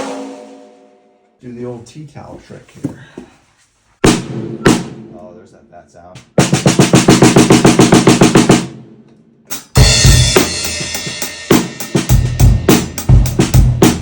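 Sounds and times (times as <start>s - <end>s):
drum kit beat: 0.0s - 1.0s, 4.0s - 5.4s, 6.2s - 14.0s
cymbal ringing: 0.0s - 1.3s.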